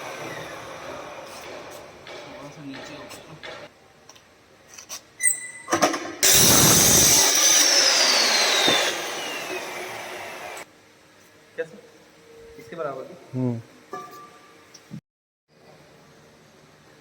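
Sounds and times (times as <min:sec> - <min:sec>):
circular saw running with whine: 0:00.0 - 0:01.3, 0:06.2 - 0:10.7.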